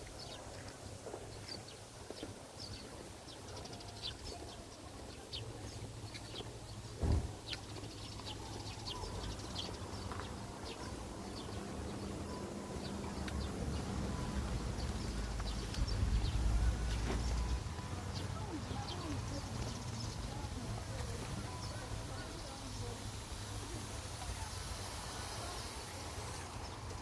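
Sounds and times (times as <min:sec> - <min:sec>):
small birds chirping: 0:00.0 - 0:27.0
thump: 0:07.0 - 0:07.4.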